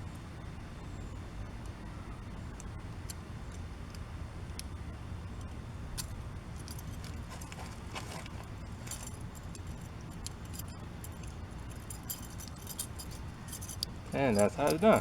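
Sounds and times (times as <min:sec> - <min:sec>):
steady low hum: 0:00.0 - 0:15.0
metal handcuffs clicking and rattling: 0:06.0 - 0:15.0.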